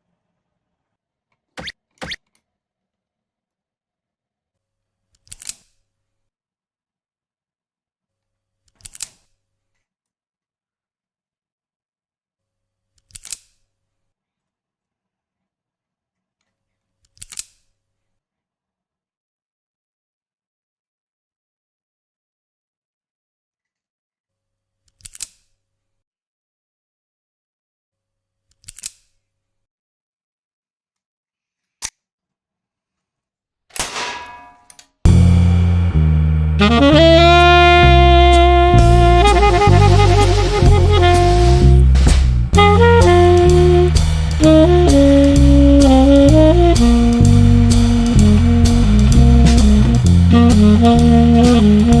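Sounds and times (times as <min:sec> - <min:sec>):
bass: 0:35.1 - 0:52.0
drum kit beat: 0:35.1 - 0:52.0
saxophone melody: 0:35.1 - 0:52.0.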